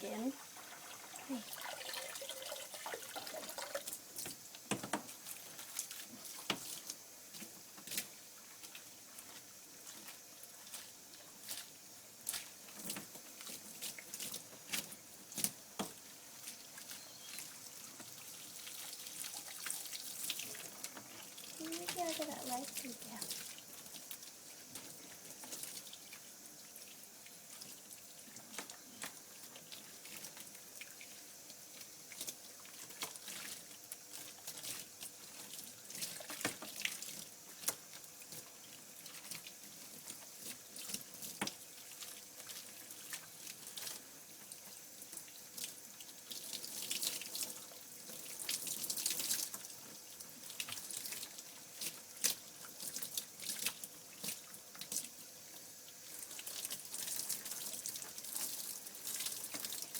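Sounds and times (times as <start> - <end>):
running water splashing in a bath: 0.0 - 59.9.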